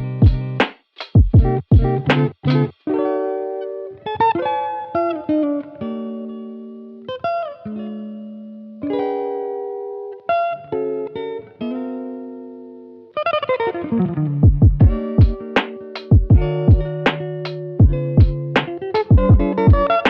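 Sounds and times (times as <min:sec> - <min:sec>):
solo guitar picking: 0:01.4 - 0:20.0.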